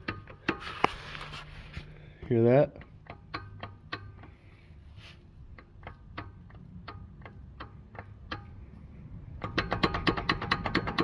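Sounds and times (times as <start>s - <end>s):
axle joint clicking: 2.7s - 4.5s, 5.4s - 11.0s.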